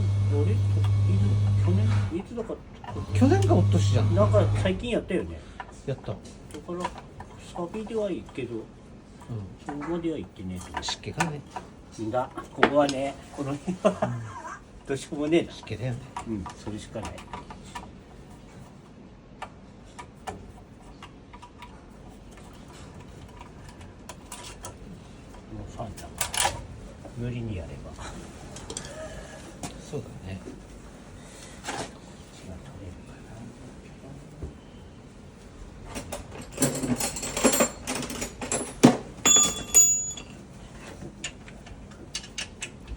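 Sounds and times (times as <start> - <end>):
low steady hum: 0.0 - 35.8
ringing metal clinks: 37.3 - 40.4.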